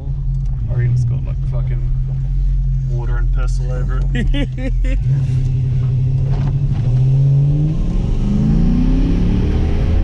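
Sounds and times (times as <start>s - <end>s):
car engine accelerating: 0.0s - 10.0s.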